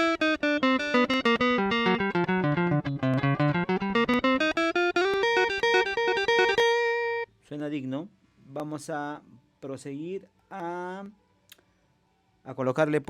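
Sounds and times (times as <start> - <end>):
clean electric guitar melody: 0.0 - 7.3.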